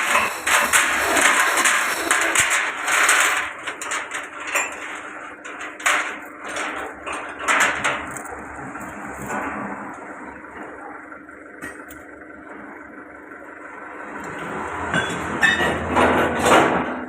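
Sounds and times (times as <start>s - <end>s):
plastic clattering and cracking: 0.0s - 8.4s
grinder machine hum: 0.0s - 17.0s.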